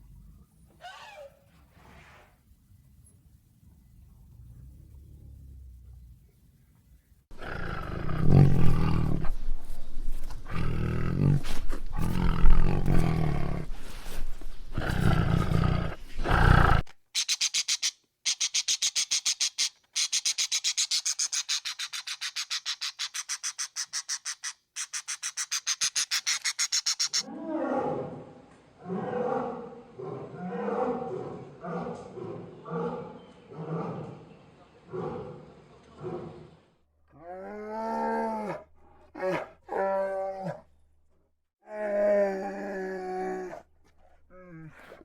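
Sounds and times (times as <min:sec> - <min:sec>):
big cat roaring: 0:07.3 - 0:09.4, 0:10.4 - 0:13.7, 0:14.7 - 0:16.9, 0:34.9 - 0:40.6
rapid high-pitched animal chirps: 0:17.1 - 0:27.3.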